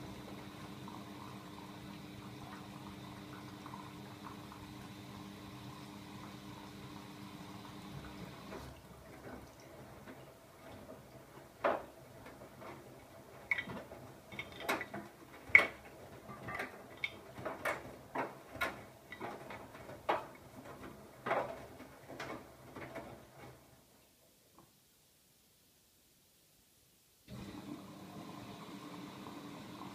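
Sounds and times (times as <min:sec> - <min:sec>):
washing machine motor hum: 0:00.0 - 0:23.8, 0:27.3 - 0:29.9.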